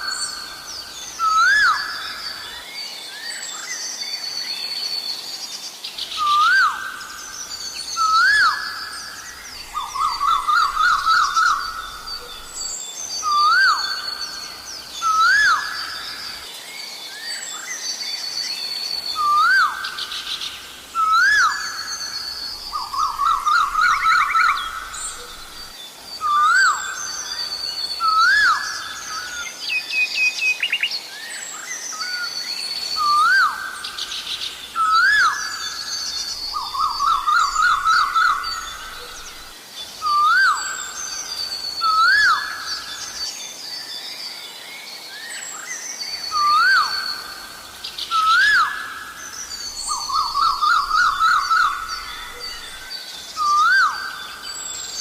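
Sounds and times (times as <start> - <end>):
small birds chirping: 0.0 - 55.0
koel rising whistled calls: 1.2 - 2.4, 6.2 - 16.4, 19.1 - 20.1, 20.9 - 29.5, 32.9 - 33.9, 34.7 - 43.3, 45.1 - 55.0.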